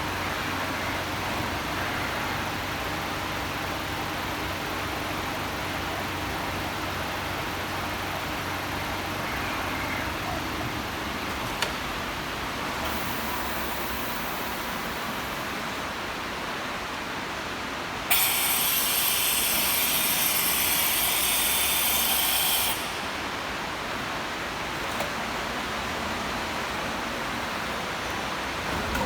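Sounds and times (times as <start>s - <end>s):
loud high hiss: 18.0s - 24.6s
machine tool running: 18.1s - 23.8s.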